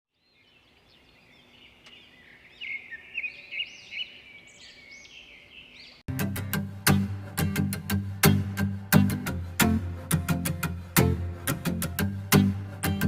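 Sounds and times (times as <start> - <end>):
birds chirping and singing: 0.2 - 6.0
plucked-string music: 6.1 - 13.0.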